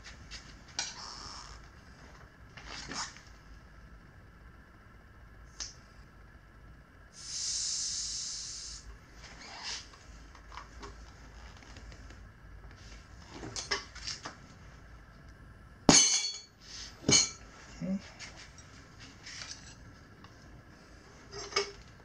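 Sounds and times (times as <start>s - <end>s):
air hissing from tire valve: 7.1s - 9.7s.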